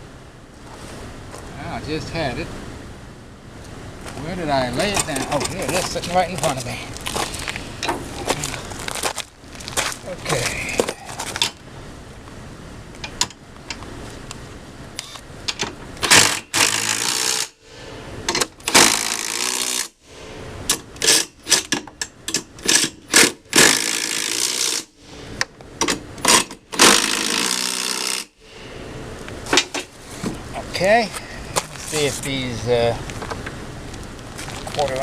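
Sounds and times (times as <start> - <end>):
power drill boring through metal: 16.1 - 17.5, 26.8 - 28.3.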